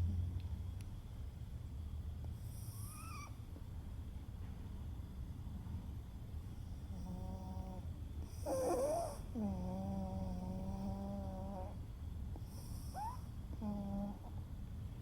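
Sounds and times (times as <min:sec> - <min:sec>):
pet snoring: 0:06.8 - 0:11.8, 0:12.4 - 0:14.4.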